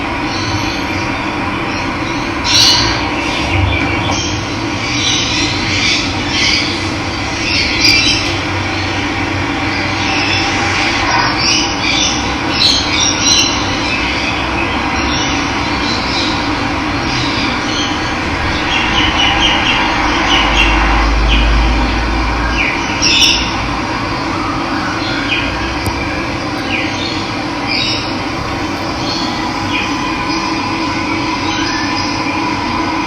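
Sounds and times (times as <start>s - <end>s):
wild birds chirping: 26.4s - 32.2s
running water rushing: 28.2s - 31.4s.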